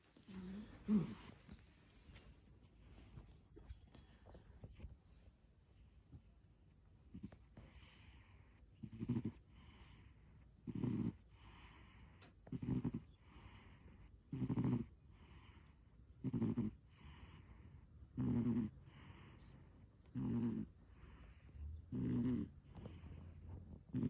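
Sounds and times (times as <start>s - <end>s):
cat snoring: 0.2s - 1.3s, 7.0s - 24.0s.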